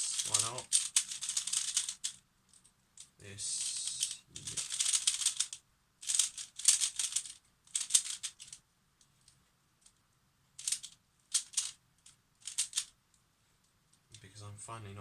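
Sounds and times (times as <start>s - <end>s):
plastic puzzle clicking rattle: 0.0s - 2.2s, 3.7s - 8.6s, 10.6s - 11.8s, 12.4s - 12.9s.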